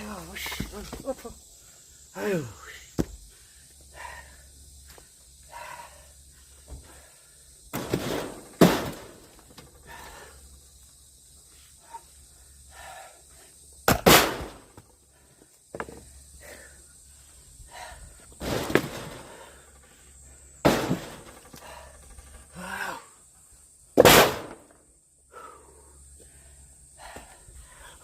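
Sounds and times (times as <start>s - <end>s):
axe chopping firewood: 7.7s - 9.1s, 13.8s - 14.8s, 24.0s - 24.7s.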